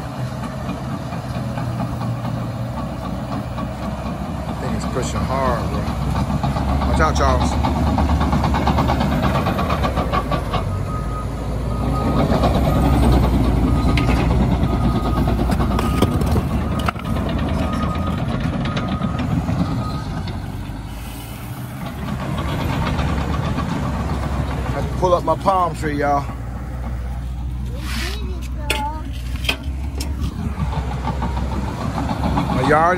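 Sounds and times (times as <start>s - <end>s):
bulldozer diesel engine under load: 0.0s - 32.9s
reversing alarm beeping: 9.7s - 21.0s
metal clanks: 28.2s - 31.5s.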